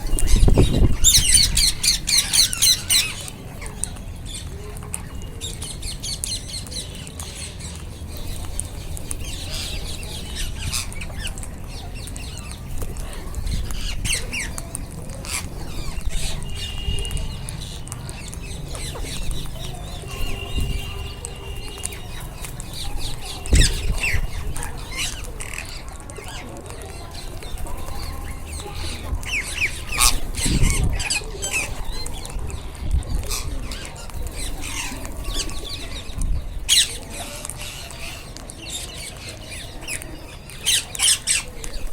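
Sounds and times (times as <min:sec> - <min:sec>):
parakeets squawking and chattering: 0:00.0 - 0:41.9.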